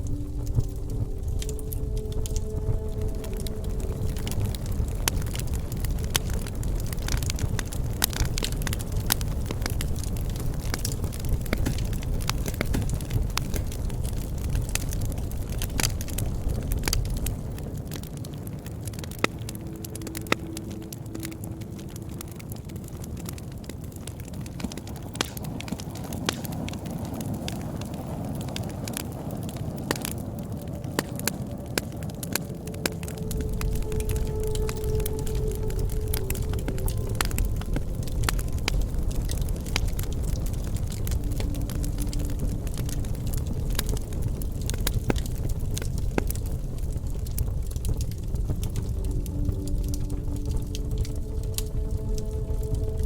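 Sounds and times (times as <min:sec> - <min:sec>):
steady tone: 0:00.0 - 0:06.2, 0:32.4 - 0:43.2
bonfire crackling and popping: 0:00.0 - 0:53.0
low rumble of flames: 0:00.0 - 0:53.0.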